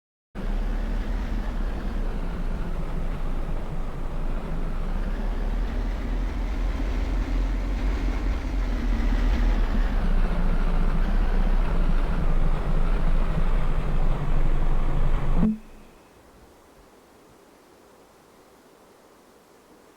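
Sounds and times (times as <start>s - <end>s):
vehicle rumbling in motion: 0.4s - 16.0s.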